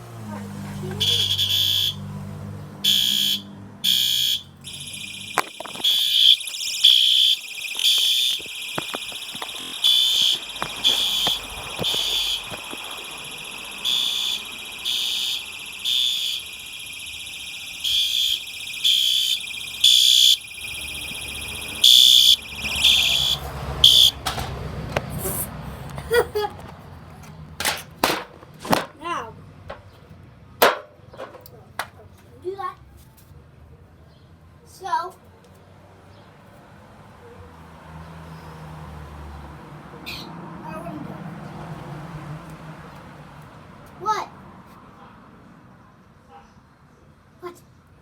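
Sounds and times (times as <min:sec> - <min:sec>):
fire alarm horn blasts: 0:00.9 - 0:02.2, 0:02.8 - 0:24.3
faint steady alarm tone: 0:01.0 - 0:02.1, 0:02.8 - 0:24.2.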